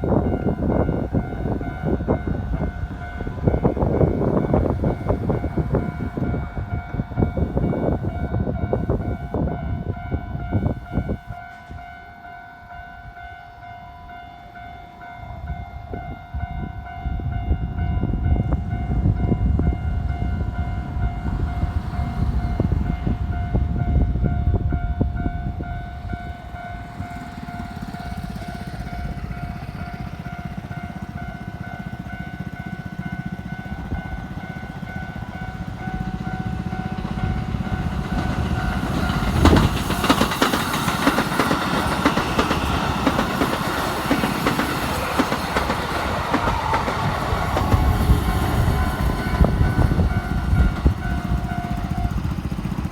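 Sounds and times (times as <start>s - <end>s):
train rumble: 0.0s - 52.9s
train wheels clacking: 25.0s - 52.9s.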